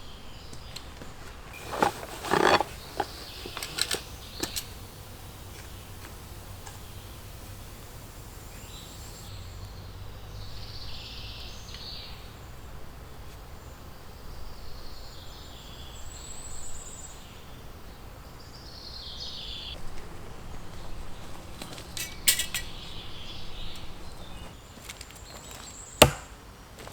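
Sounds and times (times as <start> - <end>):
small birds chirping: 0.0 - 12.8, 13.4 - 26.0.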